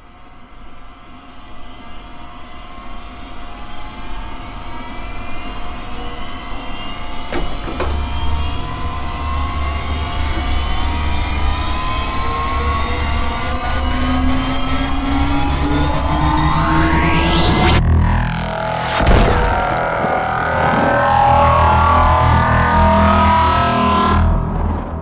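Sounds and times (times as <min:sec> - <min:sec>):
rising electronic drone: 0:03.5 - 0:25.0
deep rumble: 0:07.8 - 0:25.0
sharp crackles: 0:18.3 - 0:22.8.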